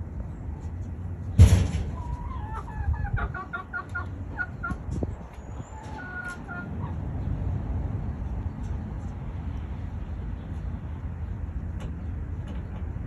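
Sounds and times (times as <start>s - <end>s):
chickens clucking: 0.0s - 7.5s.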